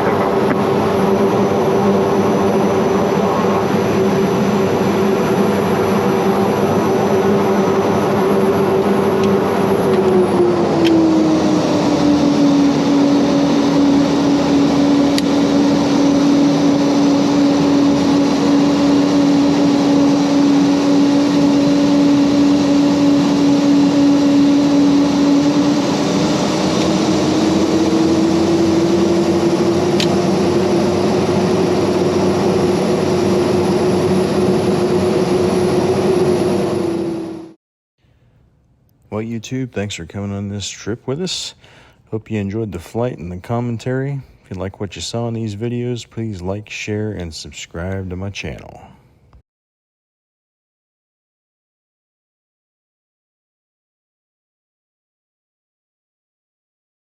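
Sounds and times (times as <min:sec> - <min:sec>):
turboprop engines droning in cabin: 0:00.0 - 0:37.6.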